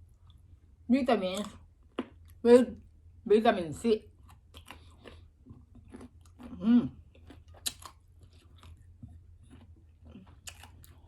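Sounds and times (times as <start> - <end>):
chewing and biting mango: 4.1 - 11.0.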